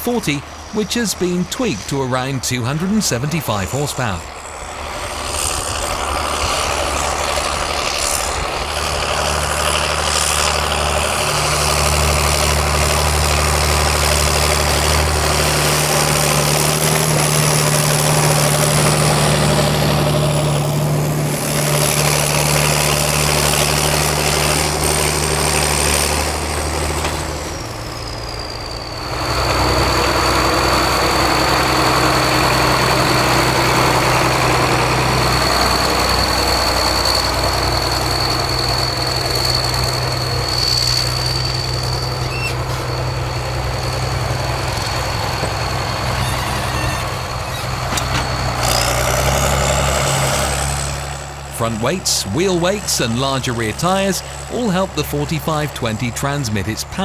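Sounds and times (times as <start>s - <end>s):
tractor diesel engine running: 0.0s - 57.0s
thin high whistle: 38.7s - 43.2s.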